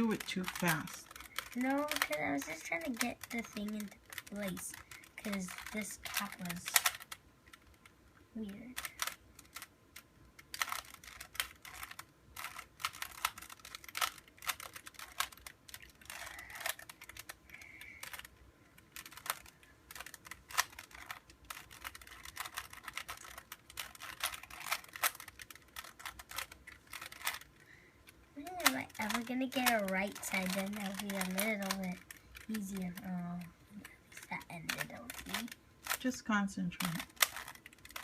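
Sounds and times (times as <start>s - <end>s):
puzzle cube clicking as turned: 0.0s - 36.2s, 36.8s - 38.0s.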